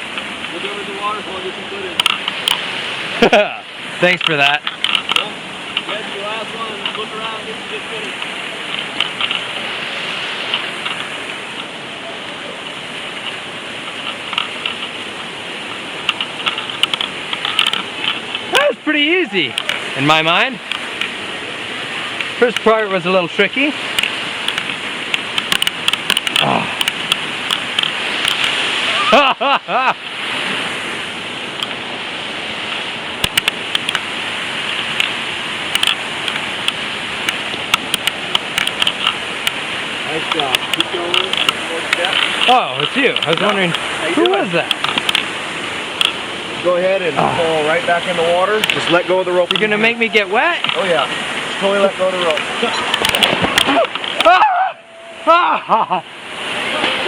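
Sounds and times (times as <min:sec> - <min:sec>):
waterfall rushing: 0:00.0 - 0:57.0
faint clicks: 0:02.0 - 0:02.6, 0:04.2 - 0:06.0, 0:08.1 - 0:09.5, 0:10.5 - 0:11.7, 0:12.6 - 0:18.5, 0:19.5 - 0:19.9, 0:23.9 - 0:28.6, 0:32.7 - 0:39.7, 0:40.3 - 0:45.3, 0:46.0 - 0:46.3, 0:48.6 - 0:49.8
person exclaiming: 0:18.5 - 0:19.5, 0:28.8 - 0:30.0, 0:47.2 - 0:47.5, 0:53.7 - 0:56.0.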